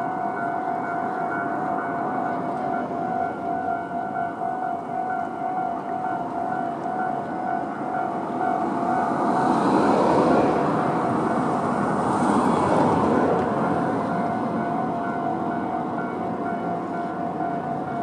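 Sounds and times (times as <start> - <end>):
electric train passing: 0.0 - 18.0
level crossing warning bell: 0.0 - 18.0.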